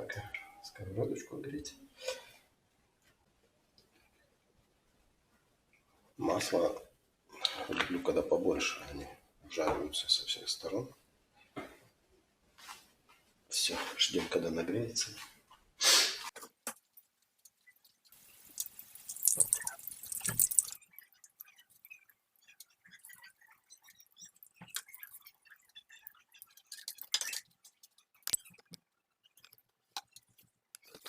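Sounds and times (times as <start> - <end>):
fish frying in hot oil: 16.8 - 28.5.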